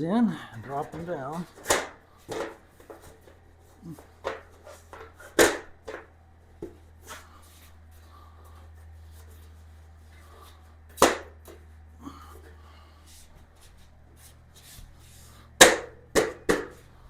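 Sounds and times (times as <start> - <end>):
steady low hum: 0.0 - 17.0
shelf boards knocking on metal frame: 15.6 - 16.8.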